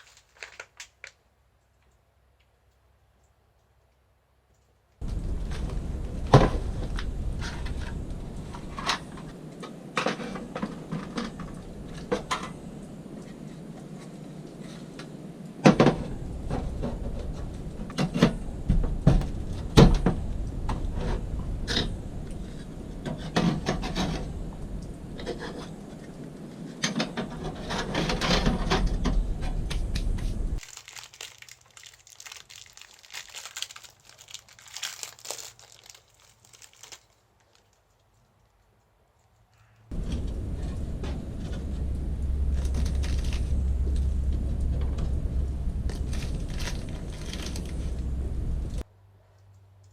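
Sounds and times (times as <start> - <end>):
low steady rumble: 5.0 - 30.6, 39.9 - 48.8
objects being handled: 19.1 - 38.6, 39.9 - 45.1, 45.8 - 48.8
faint rustling: 39.6 - 48.8.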